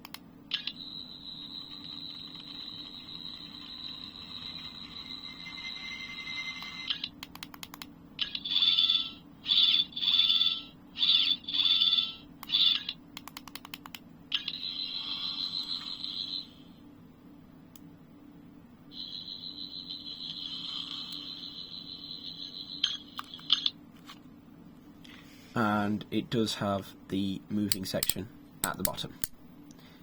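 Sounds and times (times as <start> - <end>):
toy high whine: 0.5 - 7.1, 8.2 - 13.0, 14.3 - 16.8, 18.9 - 23.7
warbling electronic whine: 0.6 - 7.1, 14.3 - 16.8, 18.9 - 23.8.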